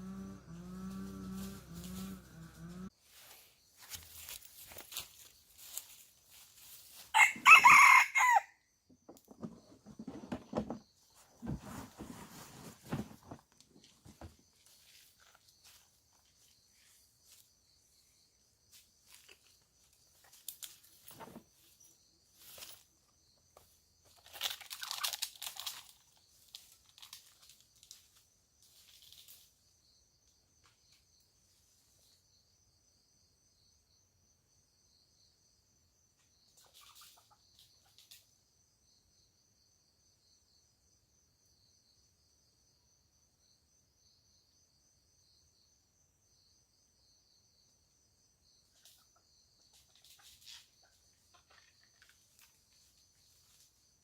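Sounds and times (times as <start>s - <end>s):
chickens scratching in dry litter: 3.1s - 7.2s, 11.2s - 14.2s, 24.1s - 29.5s, 49.7s - 53.8s
high pulsing insect trill: 14.4s - 54.0s.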